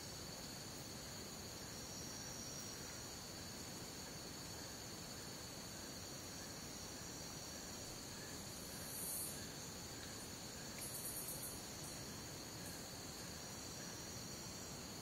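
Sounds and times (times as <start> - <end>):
crickets and insects chorus: 0.0 - 15.0
very high insect buzz: 6.0 - 15.0.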